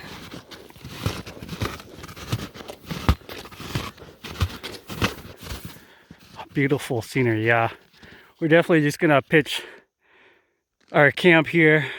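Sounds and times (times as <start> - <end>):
footsteps crunching in snow: 0.0 - 8.2.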